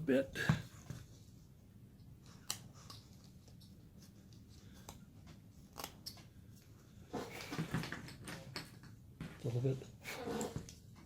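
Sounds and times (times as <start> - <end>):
carving tool scraping wood: 10.1 - 10.7.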